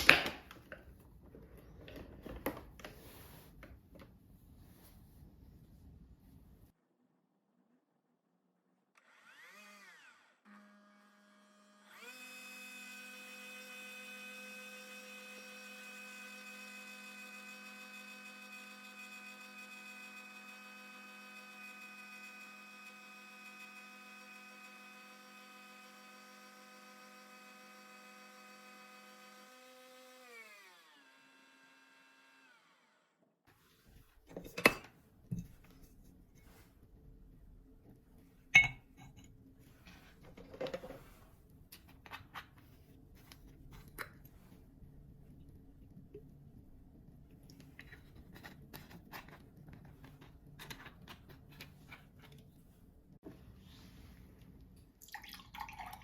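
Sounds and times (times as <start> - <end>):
kitchen appliance motor whirring: 9.0 - 33.3.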